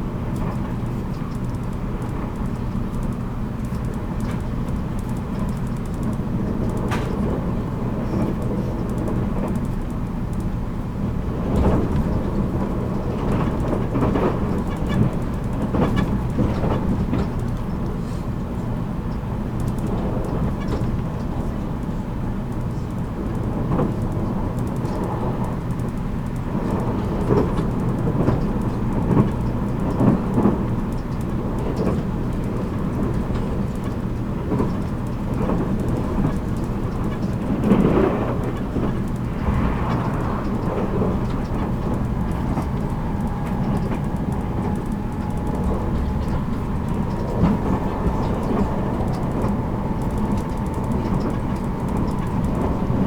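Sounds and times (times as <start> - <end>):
train wheels rumbling on rails: 0.0 - 53.0.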